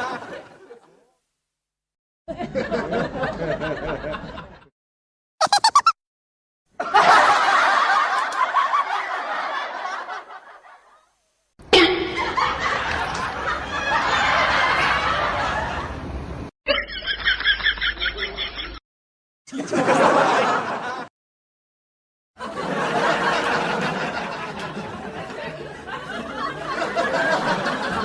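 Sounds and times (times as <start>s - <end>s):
people laughing: 0.0s - 1.0s, 2.3s - 4.7s, 6.8s - 10.9s, 11.8s - 16.0s, 16.7s - 18.8s, 19.5s - 21.1s, 22.4s - 28.0s.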